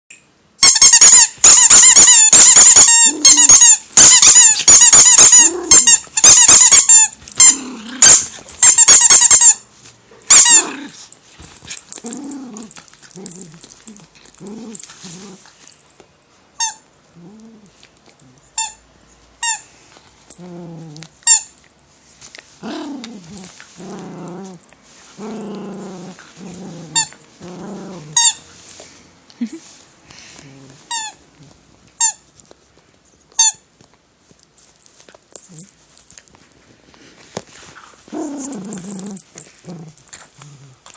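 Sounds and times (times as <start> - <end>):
squeaky toy squeaking: 0.6 - 9.7, 10.3 - 10.8, 16.6 - 16.8, 18.6 - 18.8, 19.4 - 19.7, 21.2 - 21.5, 28.2 - 28.5, 30.9 - 31.2, 32.0 - 32.2, 33.4 - 33.6
dog growling: 7.4 - 8.3, 10.6 - 11.0, 12.0 - 15.5, 17.2 - 18.4, 20.3 - 21.2, 22.6 - 24.6, 25.2 - 28.2, 38.1 - 40.9.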